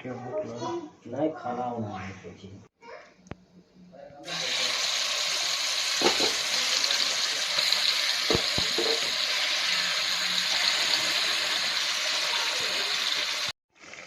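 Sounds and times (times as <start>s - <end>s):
water running from tap: 4.3s - 13.5s.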